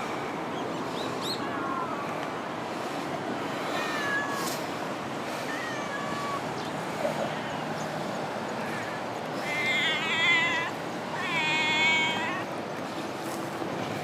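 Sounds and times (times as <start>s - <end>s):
steady rushing background noise: 0.0s - 14.0s
kittens meowing: 8.6s - 12.5s.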